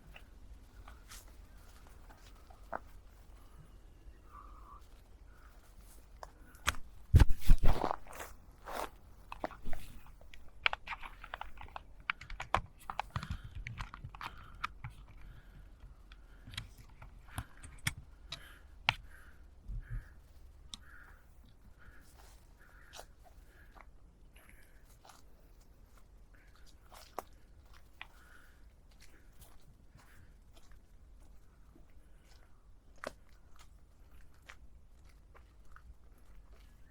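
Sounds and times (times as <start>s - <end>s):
low steady hum: 0.0s - 36.9s
footsteps on dry leaves and twigs: 5.0s - 11.2s.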